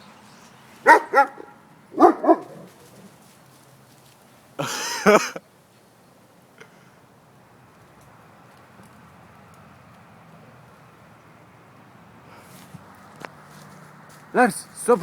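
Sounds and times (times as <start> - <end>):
dog barking: 0.8 - 2.8.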